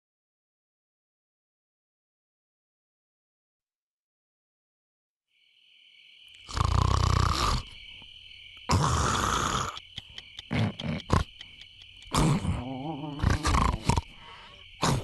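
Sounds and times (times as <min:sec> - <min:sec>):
loud snoring and snorts: 0:06.4 - 0:07.8, 0:08.7 - 0:09.8, 0:10.5 - 0:11.4, 0:12.1 - 0:14.2, 0:14.8 - 0:15.0.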